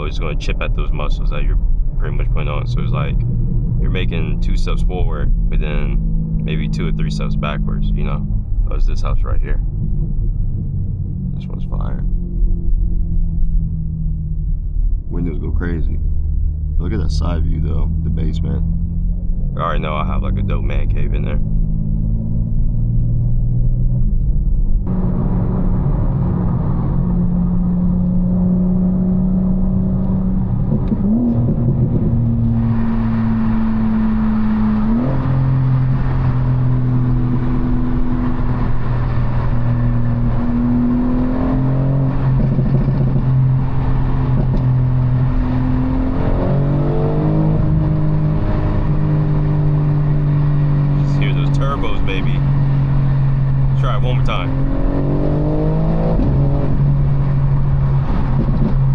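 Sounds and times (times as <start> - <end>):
road noise: 0.0 - 58.9
car engine pulling: 14.8 - 24.1, 24.7 - 58.9.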